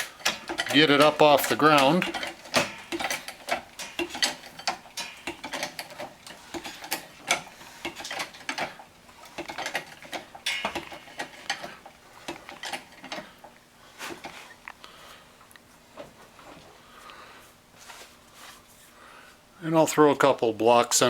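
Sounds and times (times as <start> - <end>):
car jack ratcheting: 0.0 - 13.5.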